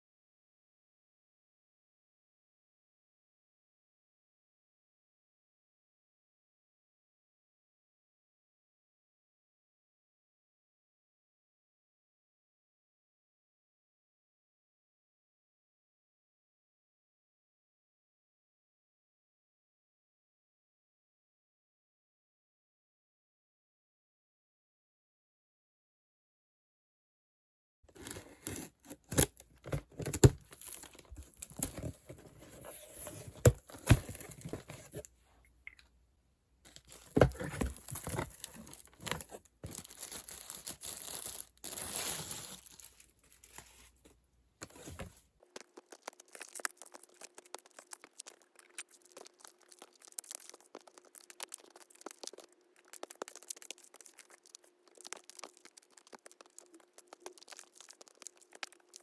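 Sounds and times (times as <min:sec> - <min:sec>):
packaging tearing and crinkling: 0:27.9 - 0:35.0, 0:36.7 - 0:43.8.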